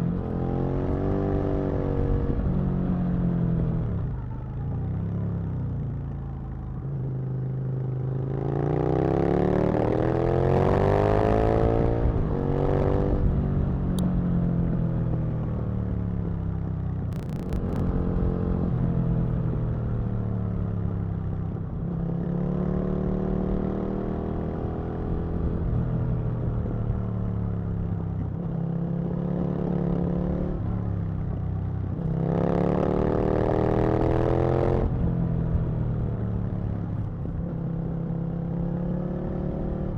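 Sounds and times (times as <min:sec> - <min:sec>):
motorcycle engine revving: 0:17.1 - 0:18.6.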